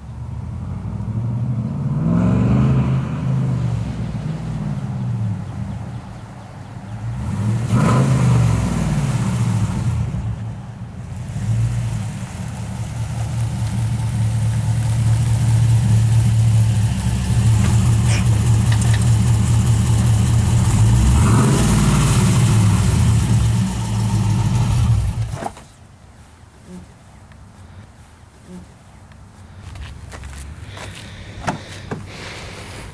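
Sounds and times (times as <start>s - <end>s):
car engine deep exhaust drone: 0.0s - 25.4s.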